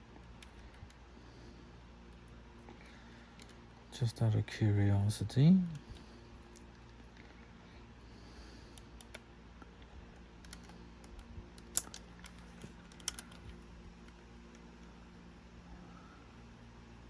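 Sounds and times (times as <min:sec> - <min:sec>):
plastic parts clicking: 0:10.4 - 0:13.6.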